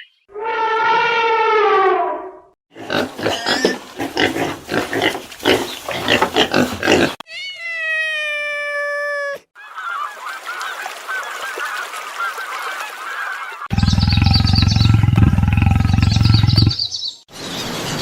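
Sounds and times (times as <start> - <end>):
loud low buzzing call: 13.7 - 16.8.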